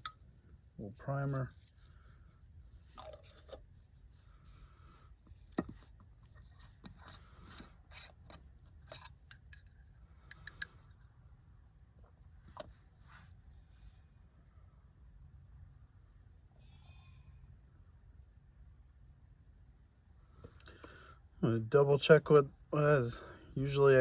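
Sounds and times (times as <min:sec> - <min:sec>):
light scraping: 0:00.8 - 0:09.2.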